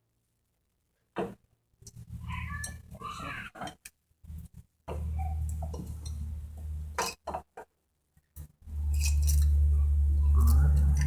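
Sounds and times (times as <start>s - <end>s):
steady low hum: 4.2s - 7.0s, 8.4s - 11.0s.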